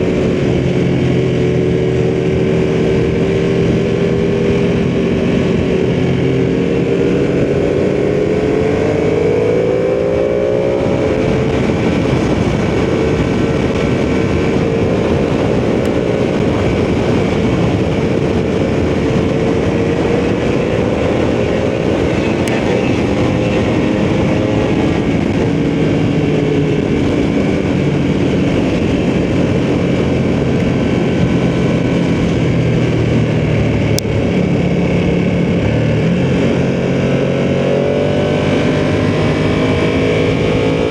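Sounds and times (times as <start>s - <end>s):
motorcycle engine running: 0.0s - 40.9s
wind noise: 0.0s - 40.9s.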